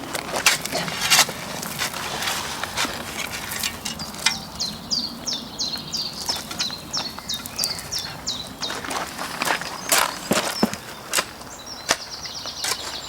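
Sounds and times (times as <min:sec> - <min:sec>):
sharp clicks and scrapes: 0:00.1 - 0:04.5
small bird chirping: 0:02.2 - 0:13.0.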